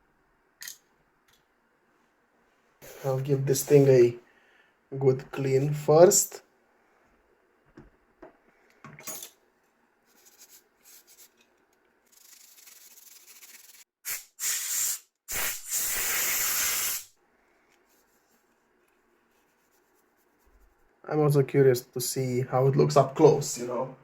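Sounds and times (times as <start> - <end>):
spray can hissing: 12.1 - 17.1.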